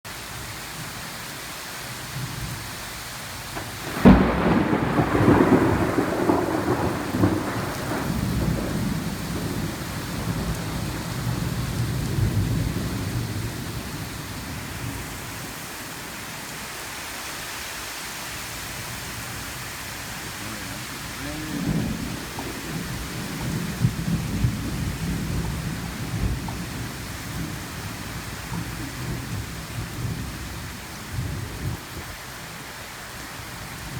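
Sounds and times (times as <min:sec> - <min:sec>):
heavy rain: 0:00.1 - 0:33.9
thunderclap and rumbling thunder: 0:03.5 - 0:15.2, 0:18.9 - 0:32.3.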